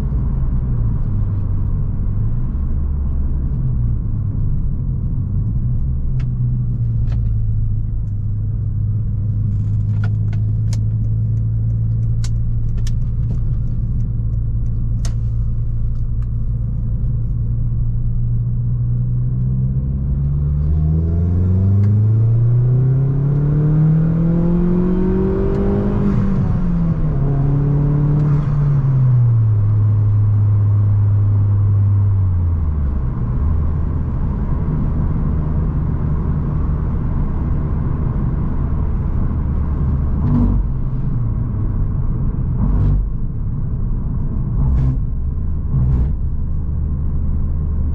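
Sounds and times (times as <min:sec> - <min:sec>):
car engine revving: 0:18.9 - 0:30.4, 0:34.0 - 0:47.9.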